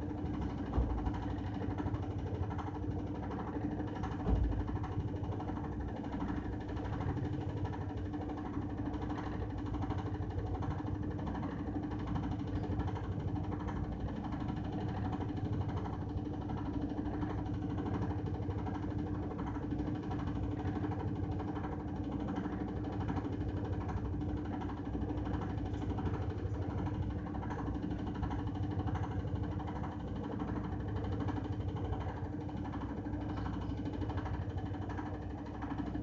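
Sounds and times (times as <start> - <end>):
washing machine running: 0.0 - 36.0.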